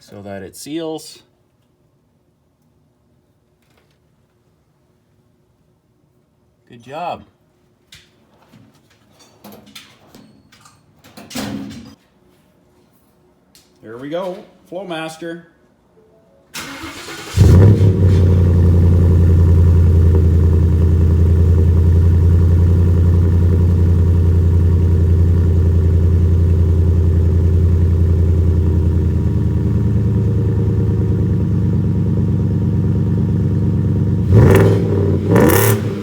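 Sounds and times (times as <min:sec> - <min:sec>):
truck engine idling: 0:18.3 - 0:34.2.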